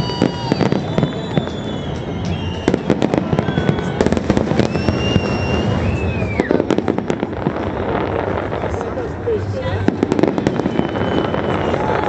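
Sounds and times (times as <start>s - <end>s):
firework whistles: 0.0s - 8.5s, 9.9s - 12.0s
fireworks cracks and crackling: 0.0s - 12.0s.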